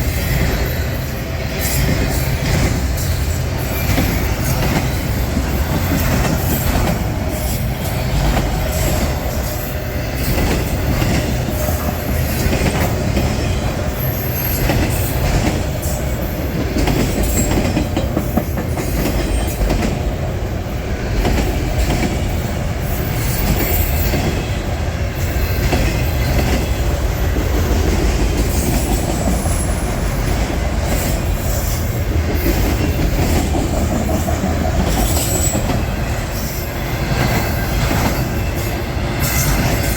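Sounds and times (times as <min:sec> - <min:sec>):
railroad cars rumbling past: 0:00.0 - 0:39.9
wheel squeals: 0:13.4 - 0:15.1, 0:34.9 - 0:39.9.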